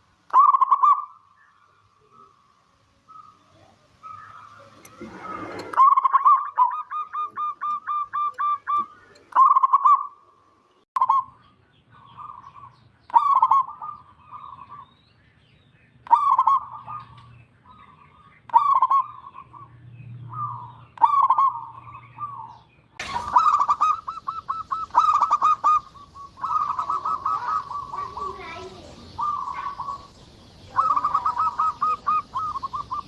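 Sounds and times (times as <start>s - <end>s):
dove cooing: 3.1s - 10.2s, 13.2s - 14.8s, 16.1s - 17.3s, 18.6s - 19.7s, 20.3s - 33.0s.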